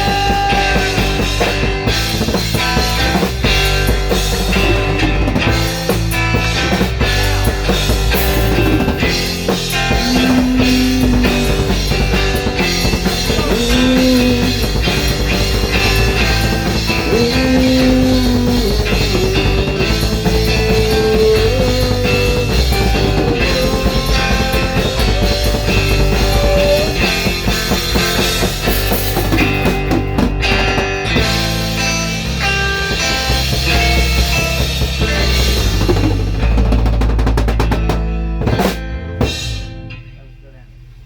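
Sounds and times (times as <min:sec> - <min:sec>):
drums: 0:00.0 - 0:41.0
rock guitars: 0:00.0 - 0:41.0.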